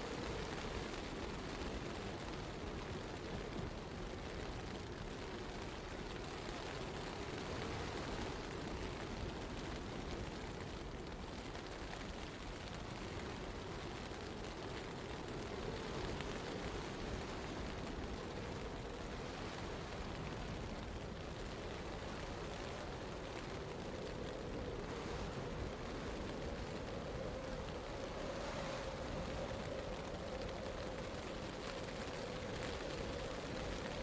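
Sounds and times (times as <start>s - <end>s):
wind and snow rushing: 15.4s - 34.0s.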